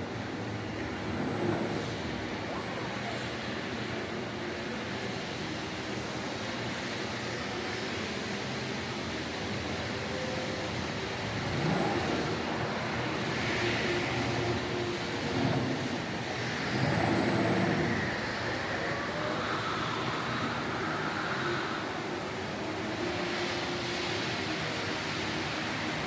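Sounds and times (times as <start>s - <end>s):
robot servo hum and whine: 9.9s - 26.0s.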